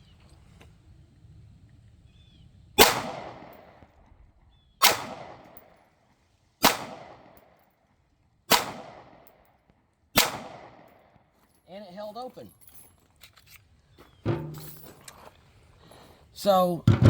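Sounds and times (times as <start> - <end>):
pistol shots with echo: 2.8 - 3.8, 4.8 - 5.8, 6.6 - 7.5, 8.5 - 9.4, 10.2 - 11.1.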